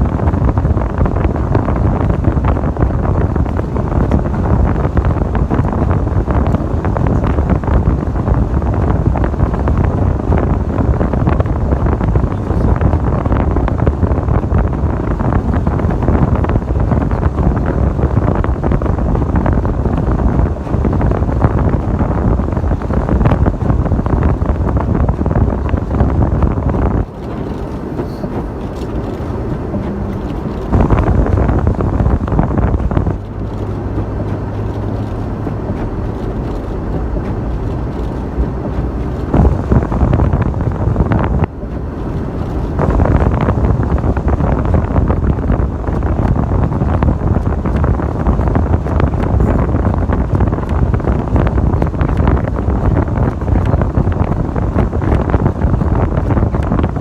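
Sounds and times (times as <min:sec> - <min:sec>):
low vehicle engine hum: 0:00.0 - 0:57.0
wind buffeting microphone: 0:00.0 - 0:57.0.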